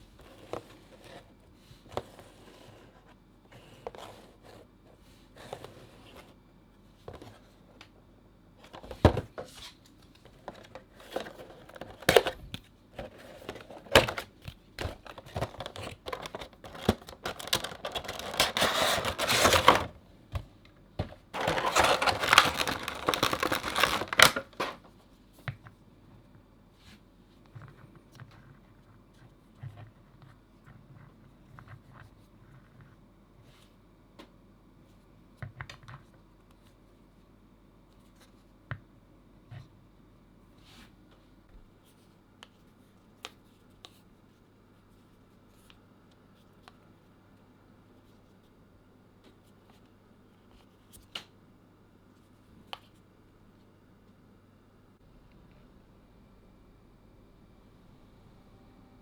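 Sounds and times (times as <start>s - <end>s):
plastic crinkling: 10.5s - 20.0s, 21.4s - 24.9s.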